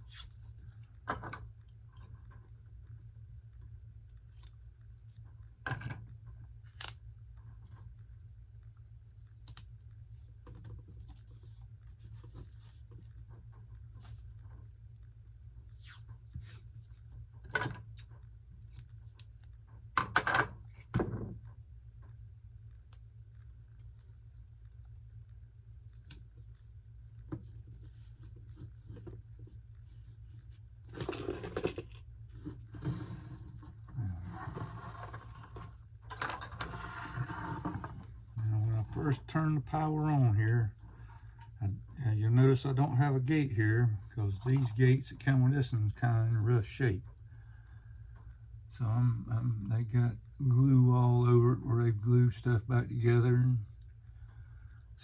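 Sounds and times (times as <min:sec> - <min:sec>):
steady low hum: 0:00.0 - 0:55.0.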